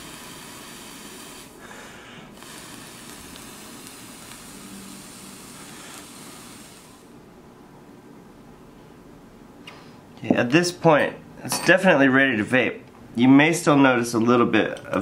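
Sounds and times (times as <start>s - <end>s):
liquid hissing and sizzling on coils: 0.0s - 1.6s, 2.3s - 7.1s.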